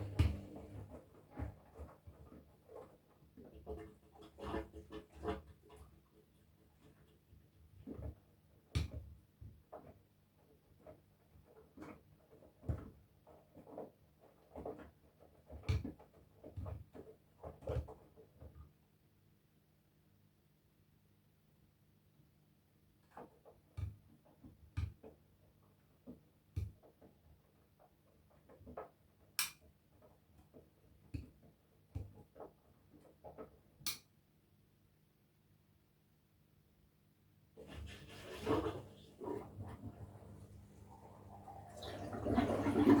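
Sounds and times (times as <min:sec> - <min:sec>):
washing machine drum tumbling: 0:00.0 - 0:00.9
wet laundry thudding: 0:00.0 - 0:00.9.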